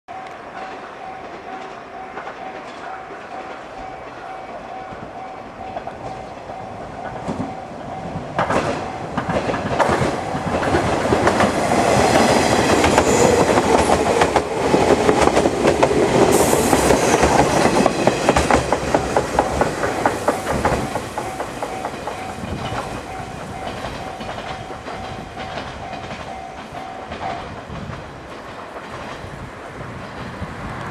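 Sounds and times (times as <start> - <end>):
electric train passing: 0.1 - 30.9
wheels clacking over rail joints: 0.2 - 30.9
level-crossing alarm ringing: 9.9 - 15.3, 16.3 - 27.4.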